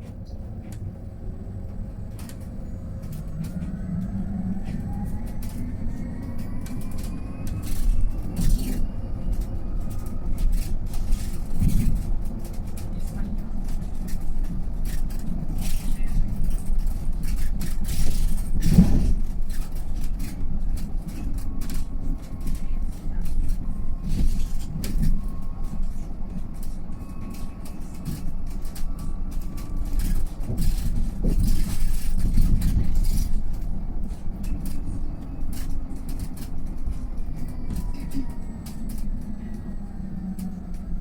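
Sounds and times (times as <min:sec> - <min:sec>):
bus road and body rumble: 0:00.0 - 0:41.0
small rattles and knocks: 0:06.7 - 0:39.1.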